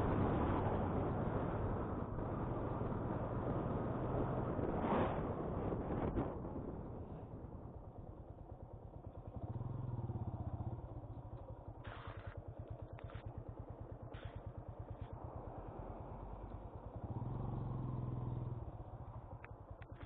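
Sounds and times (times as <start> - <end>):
motorcycle engine under load: 7.4 - 20.0.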